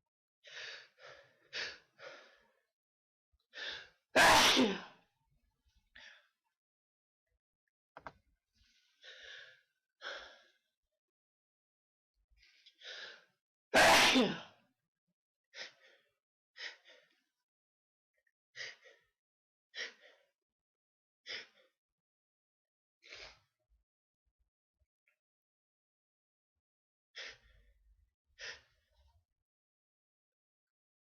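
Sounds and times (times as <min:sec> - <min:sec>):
person sneezing: 0:04.2 - 0:04.9, 0:13.8 - 0:14.5.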